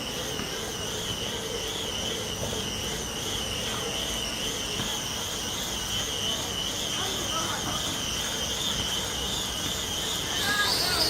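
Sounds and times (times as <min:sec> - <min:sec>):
bicycle tyre whining on rollers: 0:00.0 - 0:11.0.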